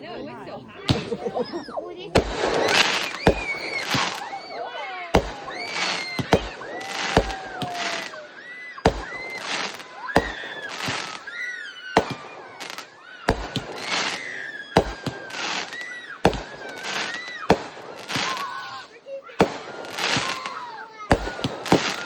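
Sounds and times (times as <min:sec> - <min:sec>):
fireworks bangs: 0:00.7 - 0:22.0
fireworks whistles: 0:00.9 - 0:22.0
fireworks hissing crackle: 0:01.0 - 0:22.0.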